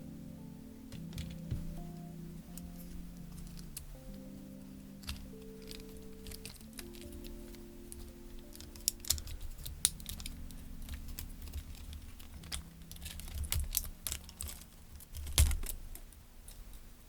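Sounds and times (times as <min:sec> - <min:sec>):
plastic controller parts clicking: 0:05.0 - 0:15.8.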